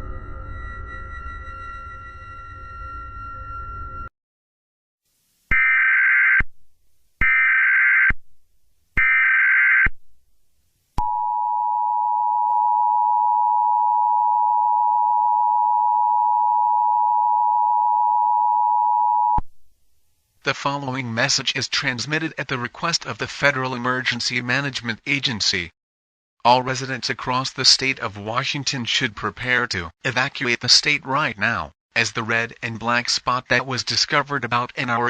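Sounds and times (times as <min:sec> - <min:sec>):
music: 0:00.0 - 0:04.1.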